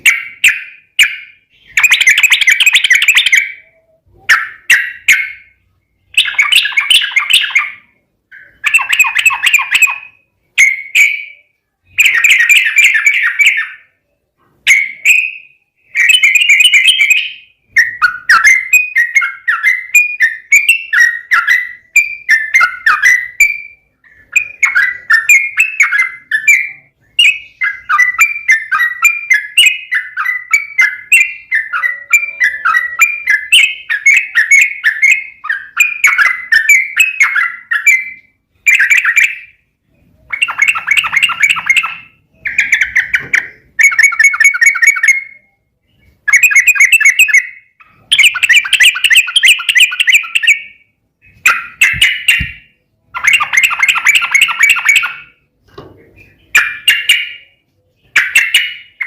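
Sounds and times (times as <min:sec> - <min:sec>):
bulbul singing chattering phrases: 0:00.0 - 0:14.1, 0:14.7 - 0:45.6.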